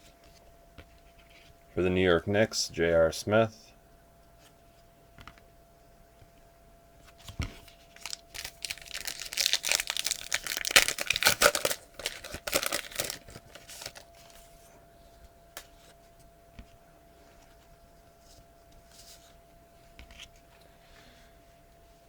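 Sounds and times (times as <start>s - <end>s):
card pack wrapper tearing: 7.9s - 14.0s.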